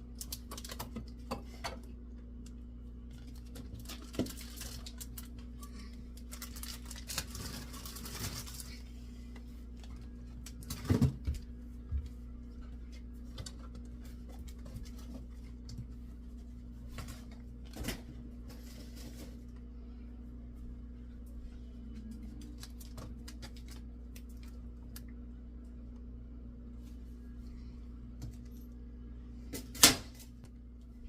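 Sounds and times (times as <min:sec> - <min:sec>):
steady low hum: 0:00.0 - 0:31.0
packaging rustling: 0:03.3 - 0:05.3, 0:06.2 - 0:08.8.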